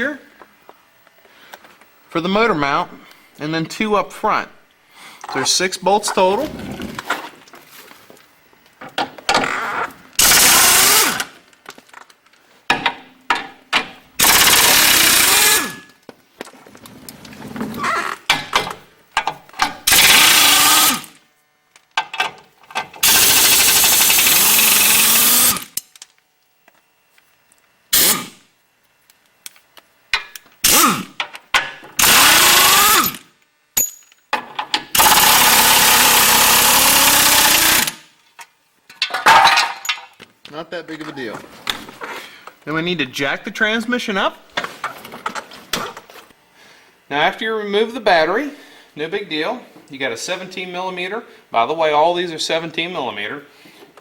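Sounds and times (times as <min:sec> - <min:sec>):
impact wrench bursts: 0:09.3 - 0:11.4, 0:12.8 - 0:16.0, 0:18.3 - 0:21.2, 0:23.0 - 0:25.9, 0:27.9 - 0:28.5, 0:30.2 - 0:31.3, 0:31.9 - 0:34.0, 0:34.9 - 0:38.1
metal clinks: 0:33.8 - 0:34.3.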